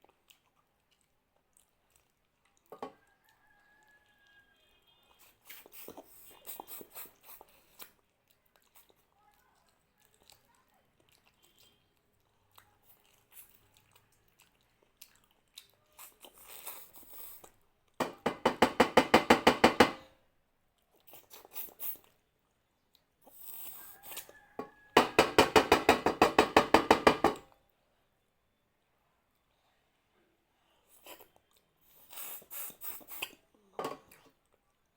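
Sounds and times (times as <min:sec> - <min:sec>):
quiet chewing: 0:00.0 - 0:18.0, 0:20.6 - 0:25.0, 0:29.2 - 0:34.9.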